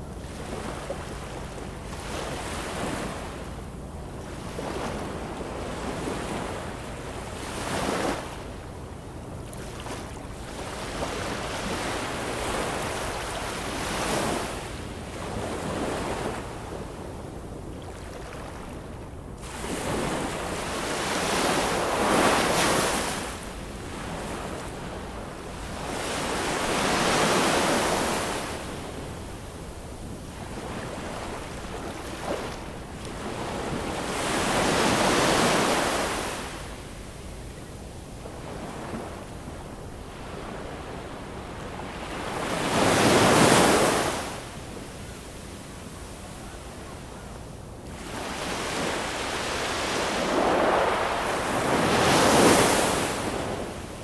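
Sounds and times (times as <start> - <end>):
ocean waves washing in: 48.0 - 54.0.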